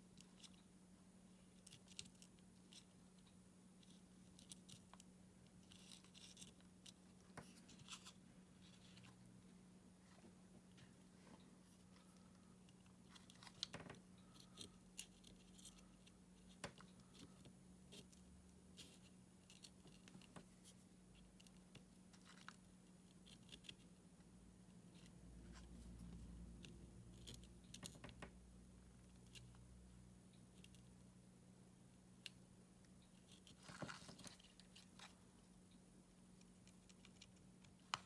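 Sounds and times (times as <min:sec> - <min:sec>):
low electrical hum: 0:00.0 - 0:38.0
small objects clicking and scraping: 0:00.2 - 0:00.6, 0:01.5 - 0:09.2, 0:12.0 - 0:23.8.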